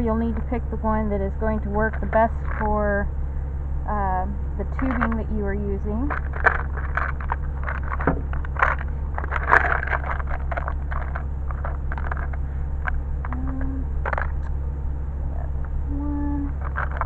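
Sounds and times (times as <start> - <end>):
steady low rumble: 0.0 - 17.0
plastic fittings clicking and rustling: 4.7 - 5.3, 6.1 - 14.4, 16.6 - 17.0.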